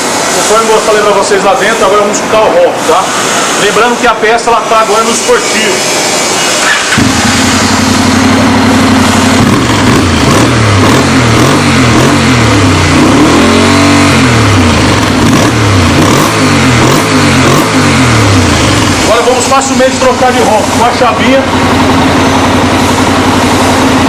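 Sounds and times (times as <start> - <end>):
motorcycle engine idling and revving: 6.1 - 24.0.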